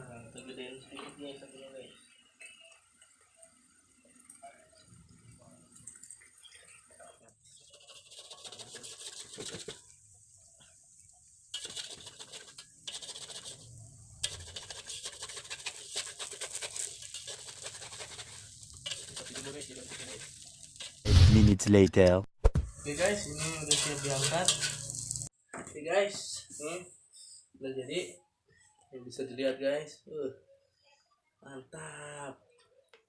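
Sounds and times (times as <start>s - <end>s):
food sizzling in hot oil: 1.4s - 21.2s, 22.7s - 25.3s.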